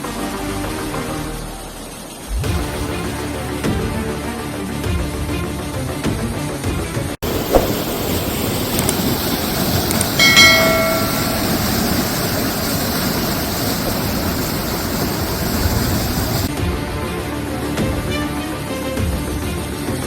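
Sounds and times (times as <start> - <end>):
heavy rain: 0.3 - 4.8, 7.2 - 16.6
rushing floodwater: 7.2 - 16.5.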